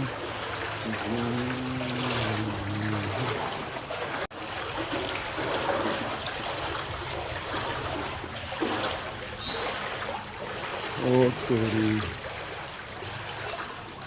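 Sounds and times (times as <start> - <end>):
floodwater rushing: 0.0 - 14.0.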